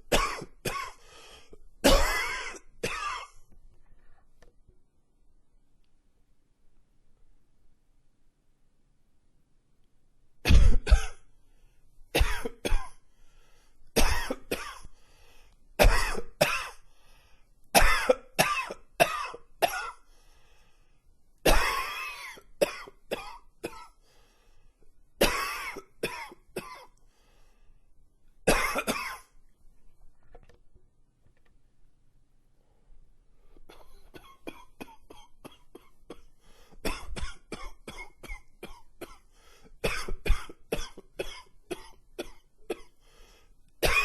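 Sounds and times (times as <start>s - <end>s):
man coughing: 0.1s - 1.0s, 1.8s - 3.4s, 10.5s - 11.2s, 12.2s - 13.0s, 14.0s - 14.8s, 15.8s - 16.8s, 17.8s - 20.0s, 21.5s - 23.9s, 25.2s - 26.9s, 28.5s - 29.3s.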